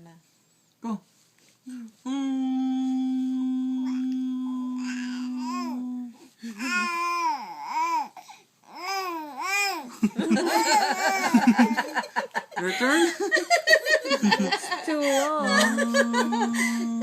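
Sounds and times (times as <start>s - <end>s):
person imitating whale song: 2.0s - 6.9s, 15.3s - 17.0s
laughter: 9.9s - 16.7s.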